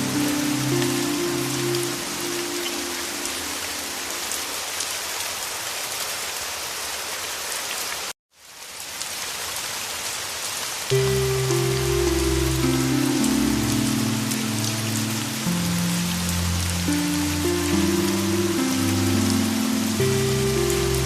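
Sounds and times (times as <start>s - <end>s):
low sustained chord: 0.0s - 4.3s, 10.9s - 21.0s
soft sustained music notes: 0.0s - 4.4s, 10.9s - 21.0s
heavy rain hissing: 0.0s - 8.1s, 9.0s - 21.0s.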